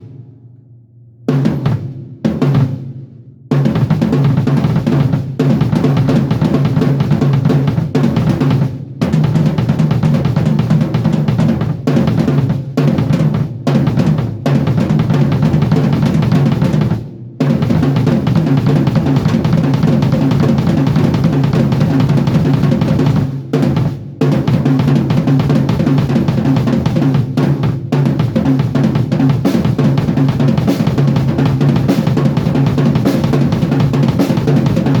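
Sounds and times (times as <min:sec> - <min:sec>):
drum kit playing: 0:00.0 - 0:00.5, 0:01.3 - 0:35.0.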